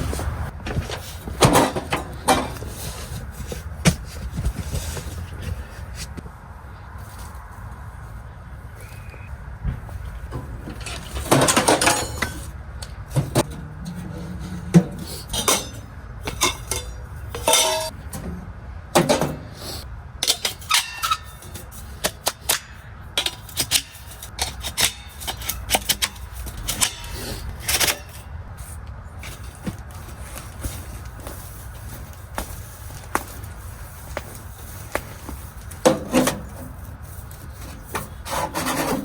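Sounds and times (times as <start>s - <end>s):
metal stove parts clanking: 0.7s - 2.7s, 10.3s - 28.3s, 35.8s - 36.8s
metal rattle: 10.2s - 19.5s.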